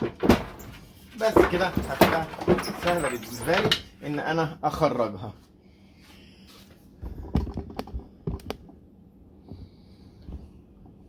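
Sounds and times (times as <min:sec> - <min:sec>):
washing machine tub knocking: 0:00.0 - 0:02.7.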